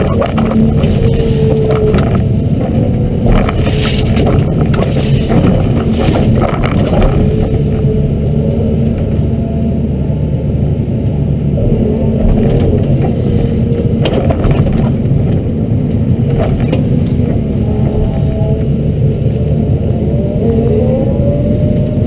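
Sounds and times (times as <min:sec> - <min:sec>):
branches crushed and snapping: 0:00.0 - 0:07.9
excavator diesel engine running: 0:00.0 - 0:22.0.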